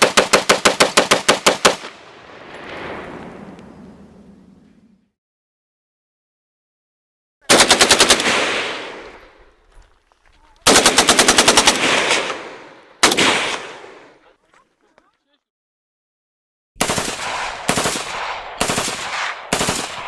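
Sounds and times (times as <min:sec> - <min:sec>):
automatic gunfire bursts: 0:00.0 - 0:01.9, 0:07.5 - 0:09.4, 0:10.6 - 0:14.1, 0:16.8 - 0:20.0.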